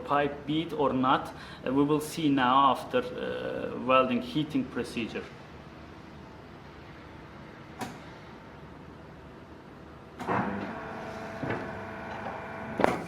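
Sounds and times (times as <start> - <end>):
machine low hum: 5.5 - 13.0
mechanical whirring with clunk: 10.1 - 13.0.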